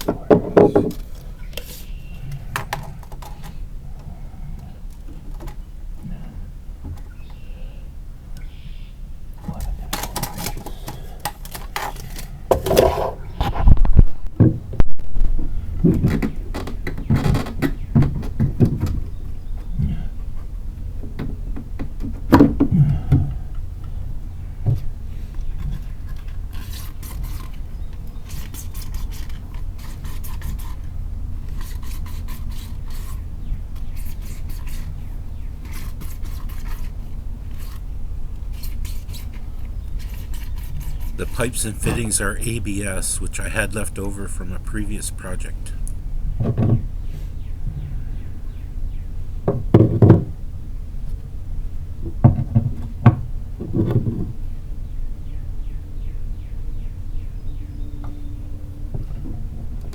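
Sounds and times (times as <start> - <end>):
scraping and knocking of hand work: 0.0 - 1.1
steady low hum: 41.1 - 46.0.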